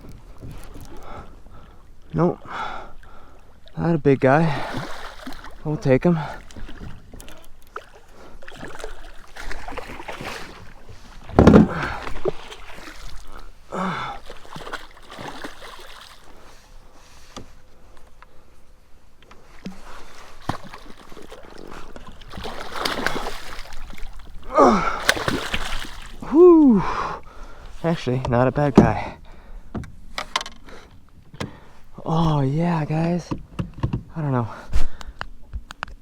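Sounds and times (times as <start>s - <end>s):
water splashing and sloshing: 0.0s - 34.1s.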